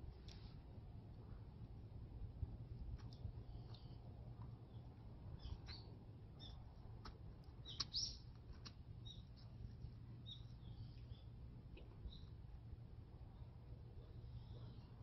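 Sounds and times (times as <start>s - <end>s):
small birds chirping: 3.4s - 12.4s.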